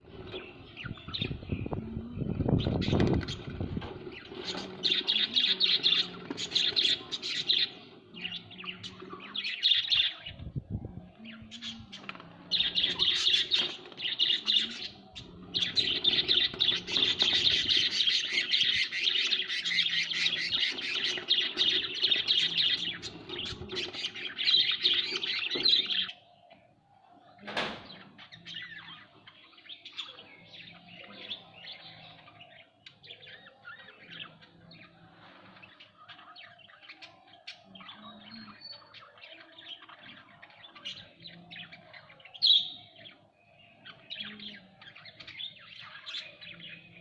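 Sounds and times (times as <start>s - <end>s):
budgerigars chattering and chirping: 11.5s - 26.2s.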